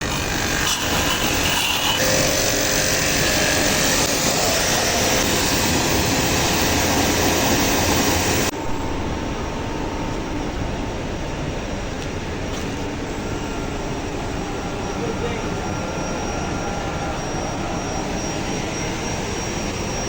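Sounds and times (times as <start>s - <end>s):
pressure washer pump running: 0.0s - 8.5s.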